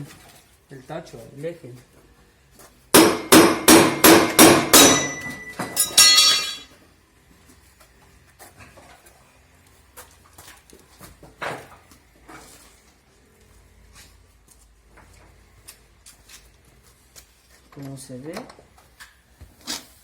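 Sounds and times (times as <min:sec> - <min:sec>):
hammer striking metal shaft: 0:03.0 - 0:06.7.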